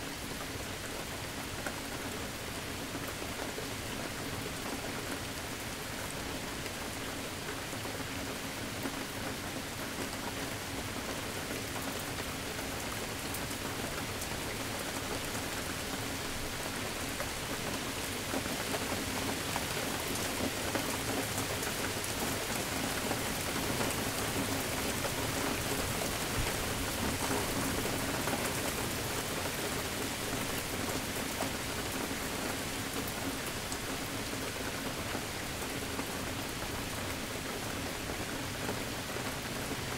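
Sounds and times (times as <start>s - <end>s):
rain pattering: 0.1s - 39.9s.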